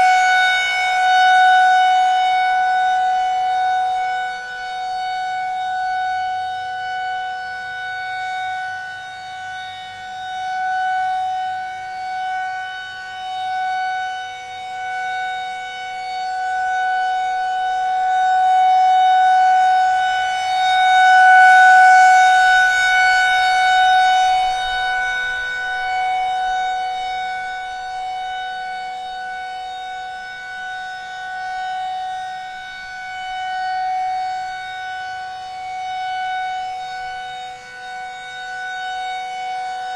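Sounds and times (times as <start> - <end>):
tornado siren wailing: 0.0 - 39.9.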